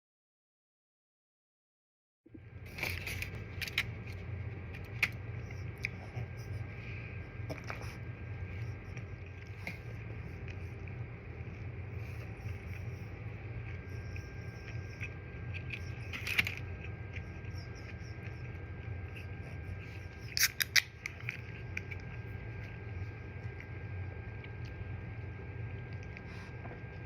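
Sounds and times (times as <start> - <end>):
low steady hum: 2.3 - 27.0
wet mouth clicks while chewing: 14.2 - 22.2.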